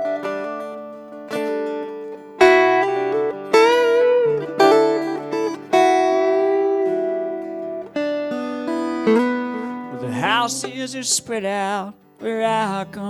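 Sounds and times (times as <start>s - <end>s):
acoustic guitar chords: 0.0s - 13.0s
person singing: 9.1s - 13.0s.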